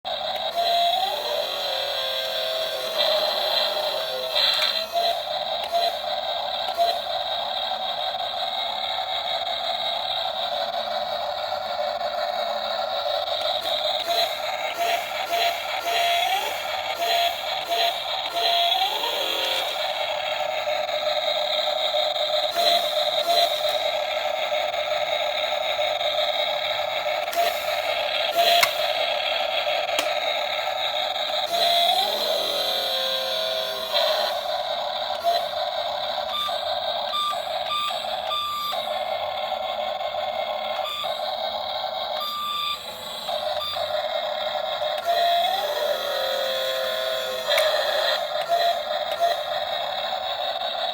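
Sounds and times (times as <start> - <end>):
model excavator whine: 0.1 - 50.9
sharp clicks: 27.3 - 30.4.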